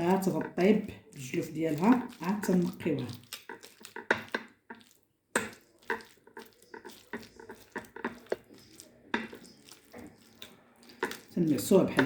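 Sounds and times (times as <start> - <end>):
hands handling food and dish: 0.0 - 12.0.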